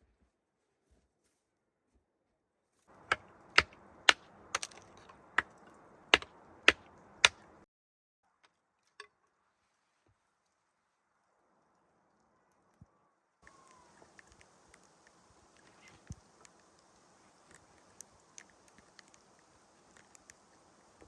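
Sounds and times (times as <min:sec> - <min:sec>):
sharp knocks or chops: 0:06.2 - 0:07.5
faint hiss: 0:09.5 - 0:21.0.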